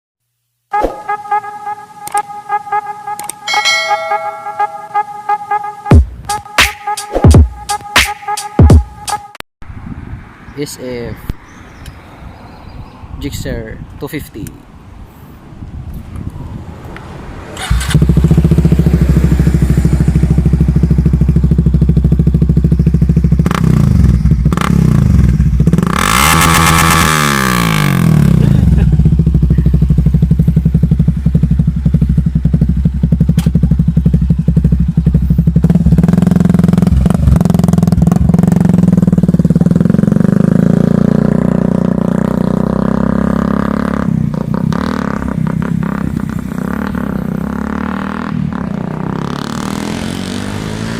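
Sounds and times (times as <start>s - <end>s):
motorcycle engine idling and revving: 15.6s - 50.9s.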